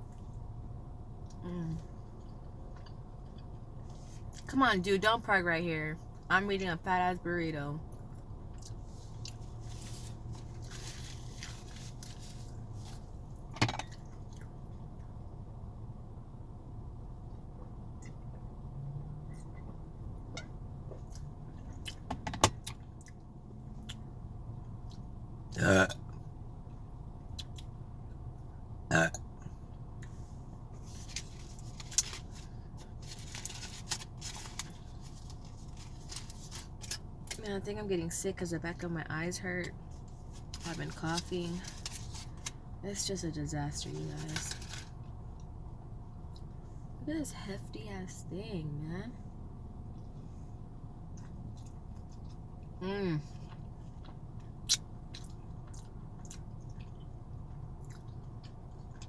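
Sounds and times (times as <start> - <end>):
low steady hum: 0.0 - 59.0
loud burp: 25.6 - 26.0, 28.9 - 29.2
chewing and biting food: 53.4 - 59.0.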